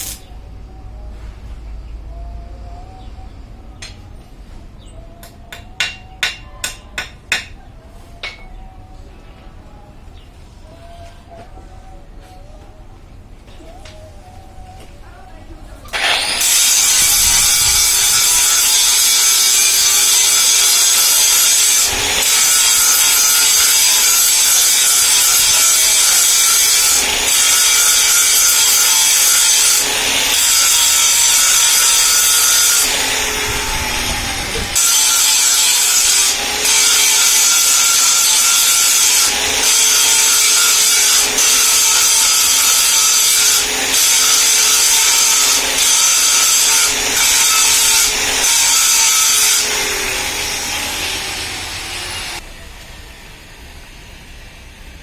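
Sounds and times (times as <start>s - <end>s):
power tool grinding: 15.9s - 52.4s.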